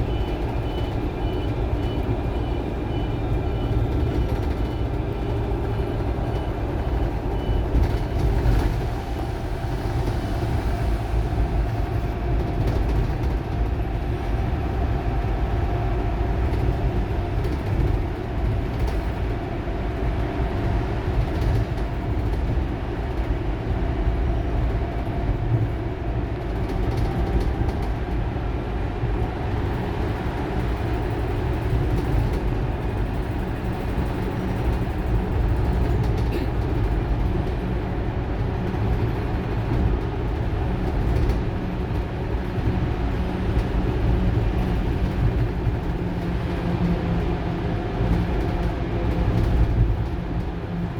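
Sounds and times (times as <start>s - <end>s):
low road rumble: 0.0s - 50.9s.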